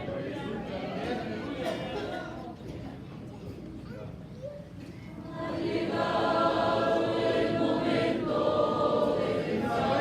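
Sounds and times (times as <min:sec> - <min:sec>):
faint murmur of congregation: 0:00.0 - 0:10.0
church choir singing: 0:05.3 - 0:10.0.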